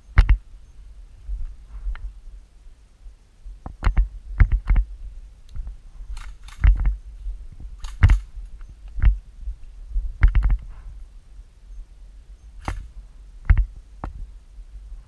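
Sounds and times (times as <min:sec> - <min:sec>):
brushing movement noises: 0:01.1 - 0:02.2
airsoft gun shots: 0:12.6 - 0:12.9.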